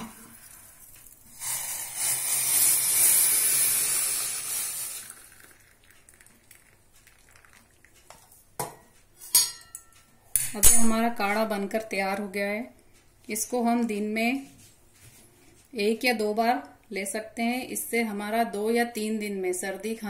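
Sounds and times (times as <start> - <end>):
liquid poured through a strainer: 0.0 - 8.2
metal utensil clinks: 9.3 - 10.0.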